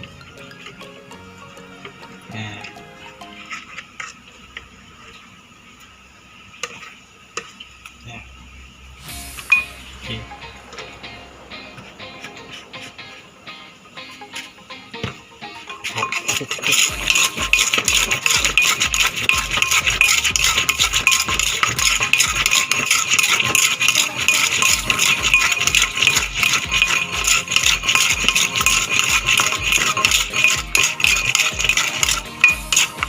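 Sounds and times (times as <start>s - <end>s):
background music with steady beat: 0.0s - 3.8s, 9.0s - 33.0s
fast shaker rattle: 15.9s - 33.0s.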